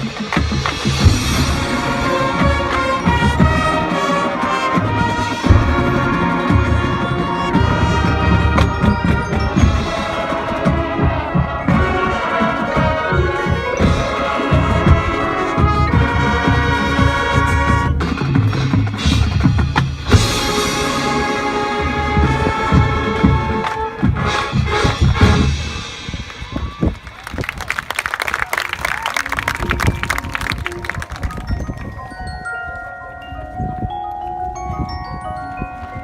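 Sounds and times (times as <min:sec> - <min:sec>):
brass chords: 0:00.0 - 0:18.8, 0:20.0 - 0:26.0
marching drums: 0:00.0 - 0:27.8.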